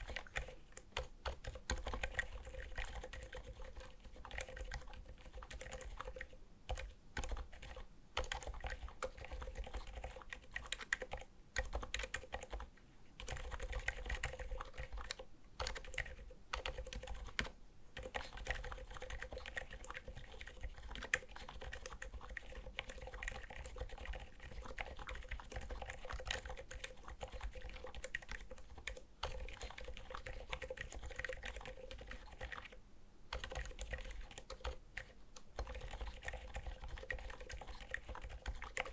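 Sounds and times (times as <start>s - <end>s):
soft keyboard typing: 0.0s - 38.9s.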